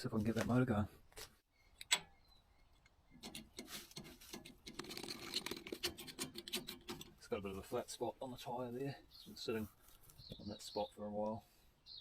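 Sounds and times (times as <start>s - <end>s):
hands handling clicks and scrapes: 3.2s - 7.2s.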